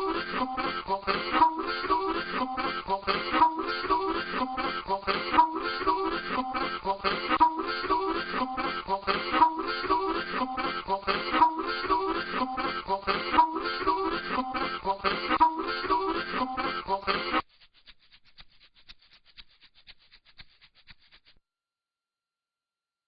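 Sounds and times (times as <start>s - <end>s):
music with repeating rhythm: 0.0s - 17.4s.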